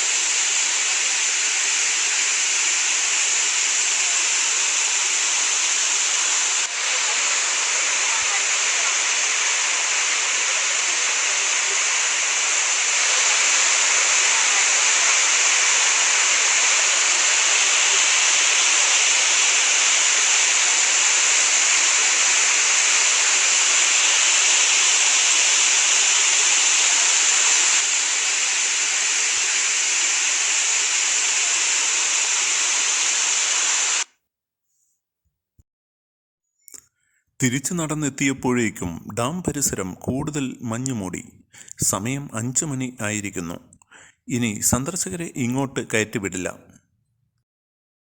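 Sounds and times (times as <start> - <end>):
waterfall rushing: 3.1 - 34.0.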